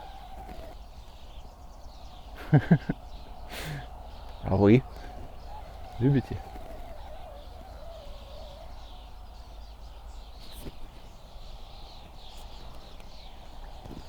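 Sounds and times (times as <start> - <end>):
birds chirping: 0.0 - 14.0
fishing line whistling: 4.8 - 9.2.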